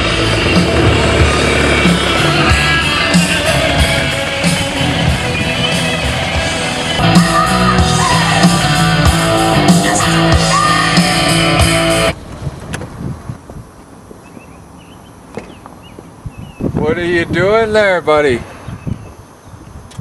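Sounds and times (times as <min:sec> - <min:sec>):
rock music with electric guitar: 0:00.0 - 0:12.2.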